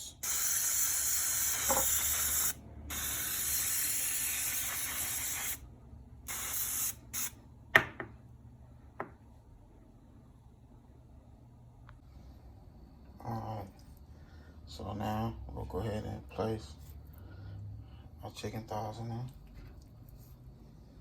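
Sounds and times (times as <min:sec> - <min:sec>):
cooking spray hissing: 0:00.0 - 0:05.6, 0:06.3 - 0:07.4.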